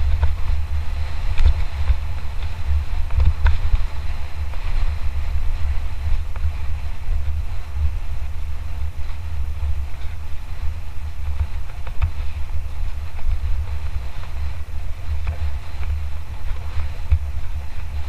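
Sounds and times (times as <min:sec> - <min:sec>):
bike rattling: 0:00.0 - 0:18.0
wind rumbling on microphone: 0:00.0 - 0:18.0.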